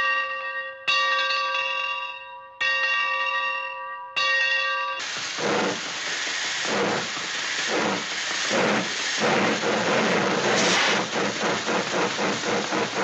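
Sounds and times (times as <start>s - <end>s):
steady rushing hiss: 5.0s - 13.0s.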